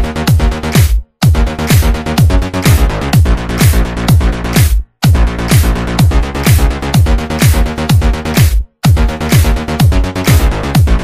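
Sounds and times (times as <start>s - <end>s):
electronic dance music: 0.0s - 11.0s
kick drum: 0.0s - 11.0s.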